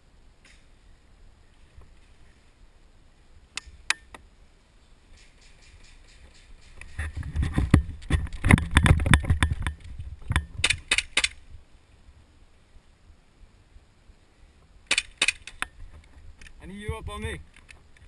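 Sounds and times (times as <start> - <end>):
clicks knocks and rattling: 6.6 - 11.4
sharp snapping clicks: 9.8 - 11.4.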